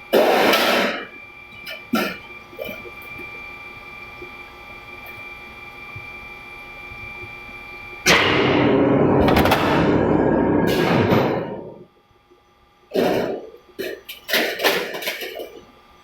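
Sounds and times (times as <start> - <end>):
press machine running: 8.1 - 11.9.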